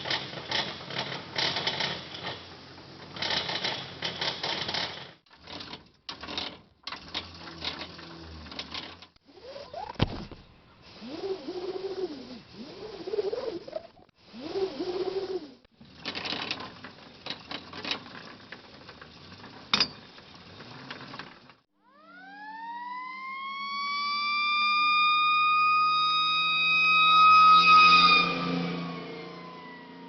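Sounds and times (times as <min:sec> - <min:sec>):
fire truck siren wailing: 0:21.8 - 0:30.0.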